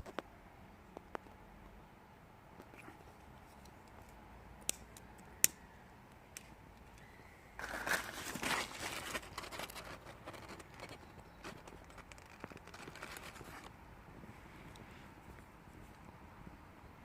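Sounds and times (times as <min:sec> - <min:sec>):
wood fire popping and crackling: 0:08.4 - 0:13.6.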